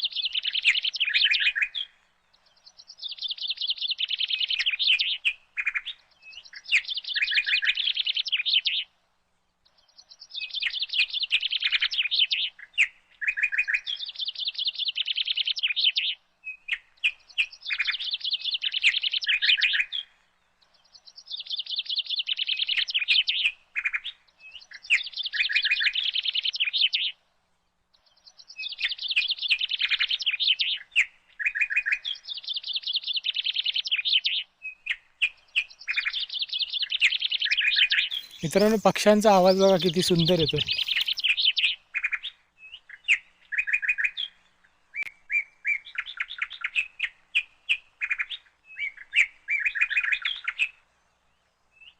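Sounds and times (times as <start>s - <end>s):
birds chattering and calling: 35.2s - 44.4s.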